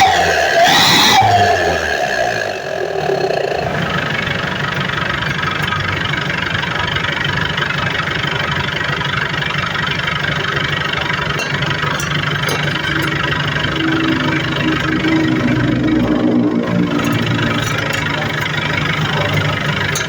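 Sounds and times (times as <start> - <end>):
engine idling with deep rumble: 0.0 - 20.0.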